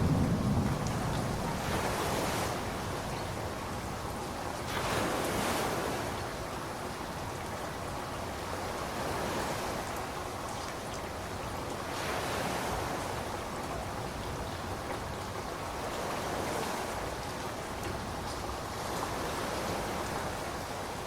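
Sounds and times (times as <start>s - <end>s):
ocean surf breaking on beach: 0.0s - 3.9s, 4.6s - 6.6s, 7.2s - 10.2s, 11.7s - 21.0s.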